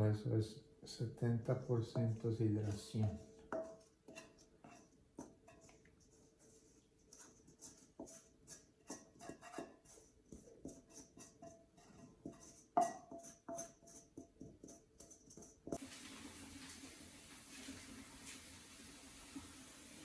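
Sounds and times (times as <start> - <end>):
steady hiss: 15.8 - 20.0.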